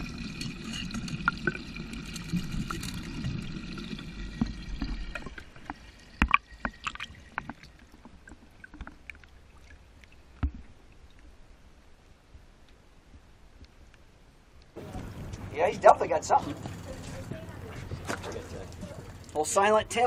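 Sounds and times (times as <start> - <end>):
water sloshing around boat: 14.8 - 20.0.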